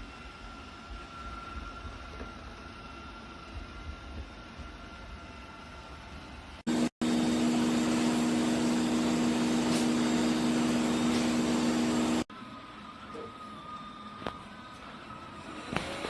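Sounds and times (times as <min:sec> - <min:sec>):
vacuum suction motor humming: 0:06.7 - 0:12.3.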